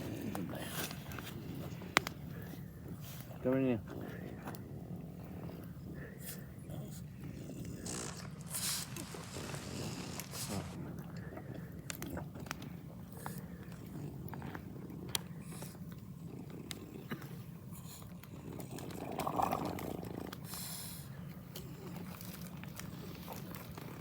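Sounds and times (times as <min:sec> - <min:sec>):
steady low rumble: 0:04.2 - 0:11.9
campfire crackling and popping: 0:07.2 - 0:11.0, 0:11.6 - 0:15.3.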